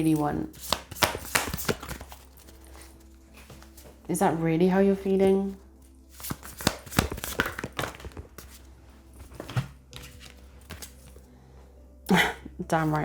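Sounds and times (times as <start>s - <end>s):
cards being shuffled: 0.5s - 4.0s, 6.1s - 8.6s, 9.2s - 11.2s.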